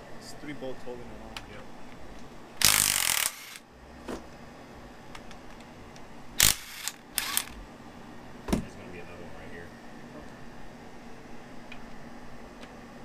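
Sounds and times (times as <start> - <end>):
tool noisy burst: 2.6 - 3.6, 6.4 - 7.6.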